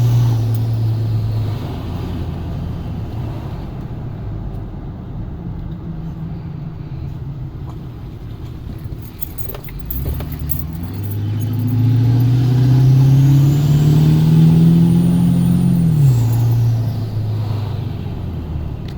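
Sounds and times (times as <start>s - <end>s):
diesel truck engine revving: 0.0s - 4.6s, 9.0s - 18.9s.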